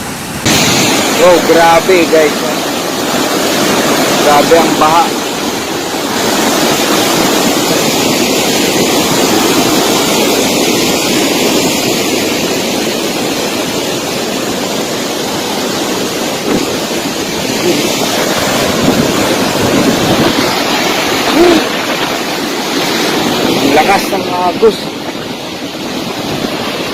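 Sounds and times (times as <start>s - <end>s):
floodwater rushing: 0.0s - 26.9s.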